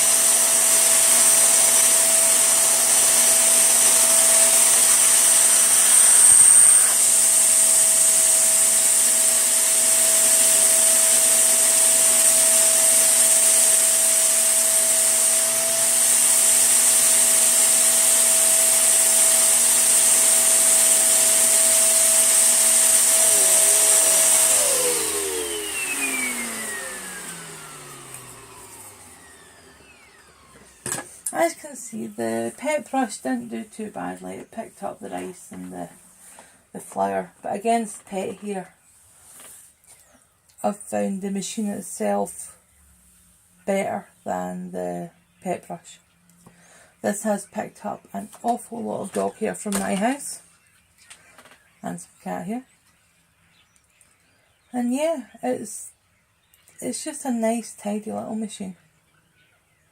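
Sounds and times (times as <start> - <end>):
motor winding down: 0.0 - 32.4
vacuum cleaner running: 0.0 - 38.7.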